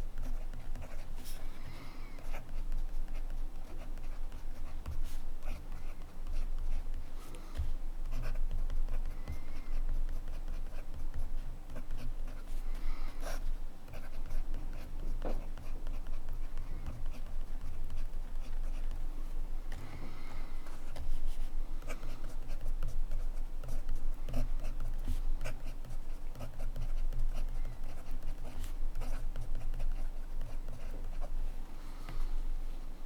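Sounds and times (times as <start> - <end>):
fountain pen writing on paper: 0.2 - 1.4, 2.2 - 7.1, 8.1 - 12.4, 13.2 - 18.9, 21.8 - 31.3.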